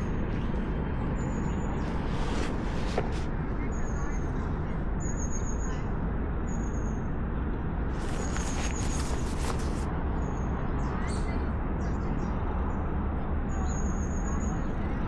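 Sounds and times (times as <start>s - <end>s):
crackling rustle: 1.6s - 3.5s, 7.9s - 9.9s.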